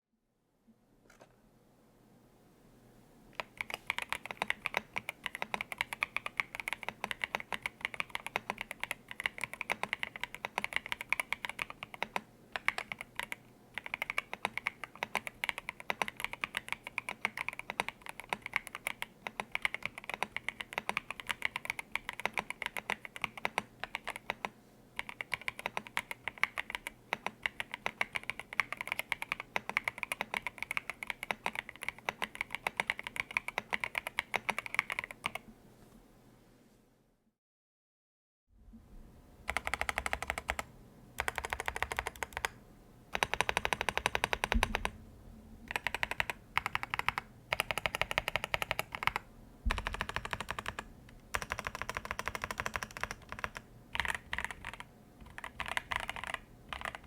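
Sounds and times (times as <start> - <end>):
fast typing on mechanical keyboard: 3.4 - 35.4, 39.5 - 45.0, 45.7 - 57.0.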